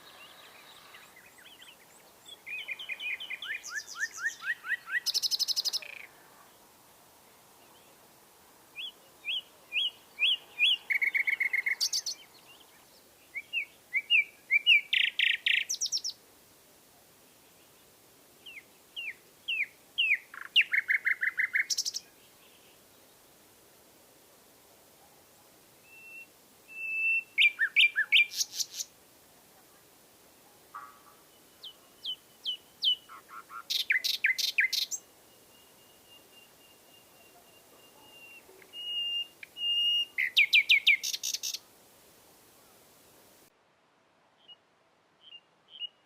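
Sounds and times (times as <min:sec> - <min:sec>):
nightingale singing: 0:00.0 - 0:06.2, 0:08.8 - 0:16.2, 0:18.4 - 0:23.2, 0:25.8 - 0:28.9, 0:30.7 - 0:41.7, 0:44.4 - 0:44.6, 0:45.2 - 0:46.0.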